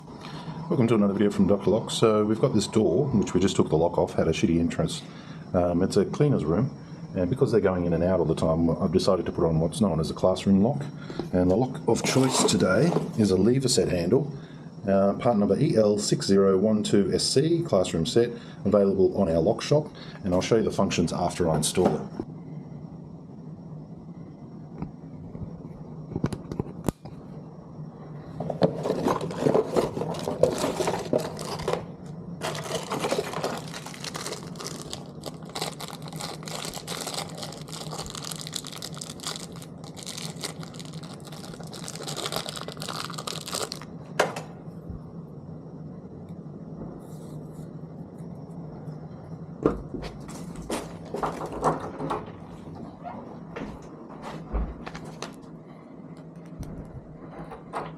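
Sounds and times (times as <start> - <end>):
steady low hum: 0.0 - 57.9
rustling and crinkling: 28.4 - 43.9, 50.0 - 55.4.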